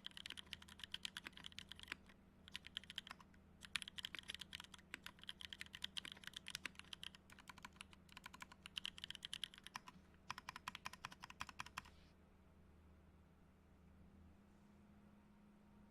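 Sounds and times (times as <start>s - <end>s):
mechanical keyboard typing: 0.0s - 11.9s.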